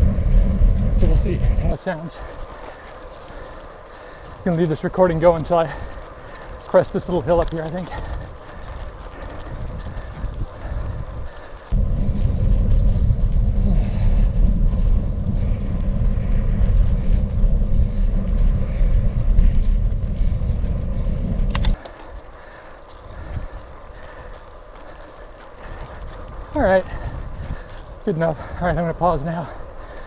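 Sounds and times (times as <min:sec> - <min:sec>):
wind buffeting microphone: 0:01.0 - 0:11.8, 0:21.7 - 0:30.0
road and tyre noise: 0:01.7 - 0:11.8, 0:21.7 - 0:30.0.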